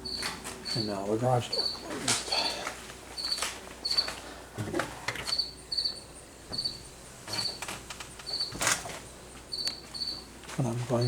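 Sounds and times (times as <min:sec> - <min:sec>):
cricket chirping: 0:00.0 - 0:04.1, 0:05.2 - 0:08.8, 0:09.5 - 0:10.3.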